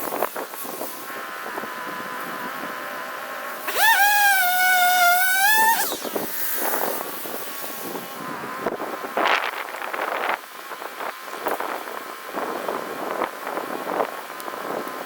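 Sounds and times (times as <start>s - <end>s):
chainsaw idling and revving: 0.0s - 8.6s.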